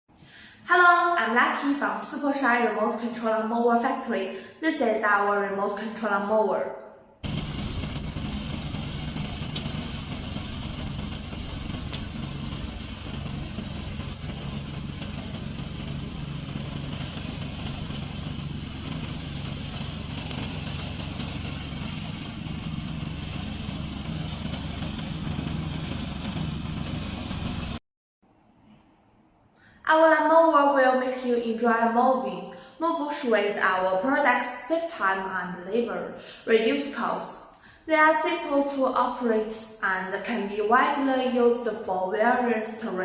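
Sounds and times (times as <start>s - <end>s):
lawn mower engine running: 7.2s - 27.8s.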